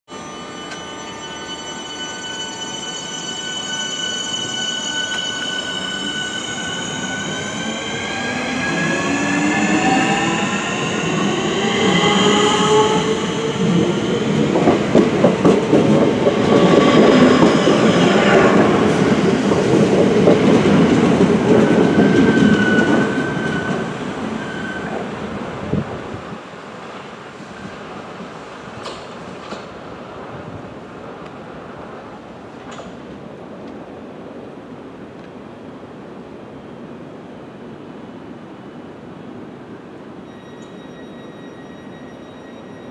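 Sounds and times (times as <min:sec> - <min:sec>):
train rumble: 0:04.4 - 0:24.3.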